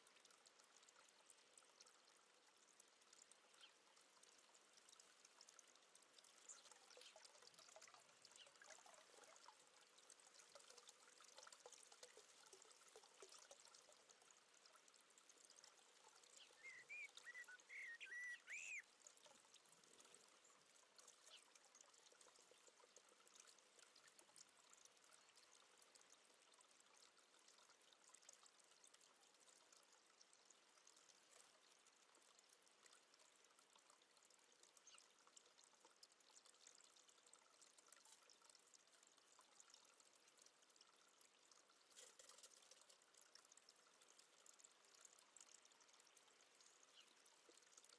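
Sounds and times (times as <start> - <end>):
faint water trickling: 0.0 - 47.9
quick bird chirps: 16.6 - 18.8.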